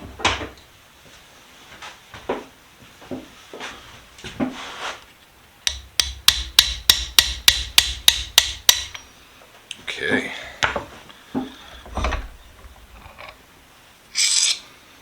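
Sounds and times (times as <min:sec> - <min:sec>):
hammer tapping: 0:05.7 - 0:09.1
dull thuds: 0:10.2 - 0:13.0.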